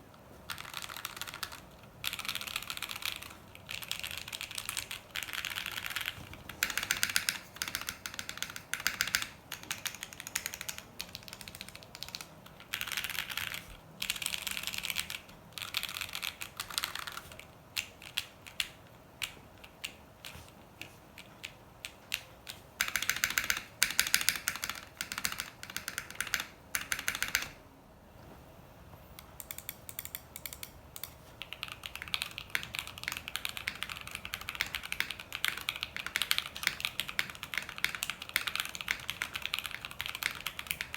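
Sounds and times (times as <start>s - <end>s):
typing on mechanical keyboard: 0.5s - 27.6s, 29.3s - 40.9s.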